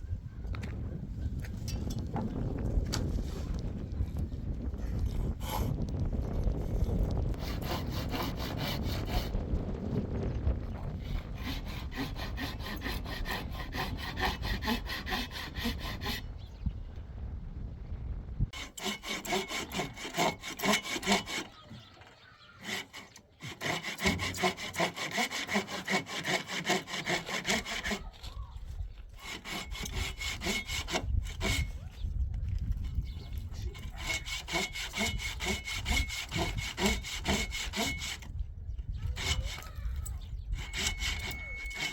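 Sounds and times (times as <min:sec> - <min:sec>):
hand saw cutting wood: 0:07.3 - 0:09.4, 0:11.0 - 0:16.2, 0:18.6 - 0:31.8, 0:32.7 - 0:38.3, 0:39.0 - 0:39.8, 0:40.6 - 0:41.9.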